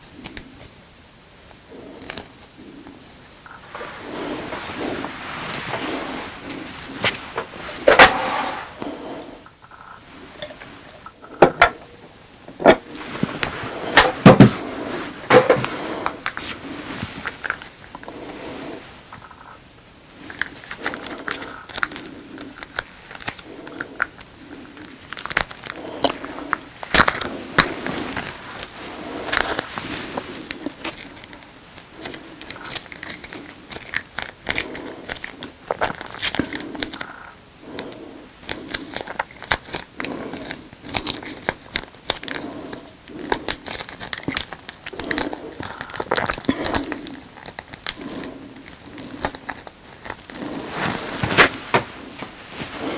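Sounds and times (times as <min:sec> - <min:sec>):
plastic packaging crinkling: 0:20.3 - 0:37.2.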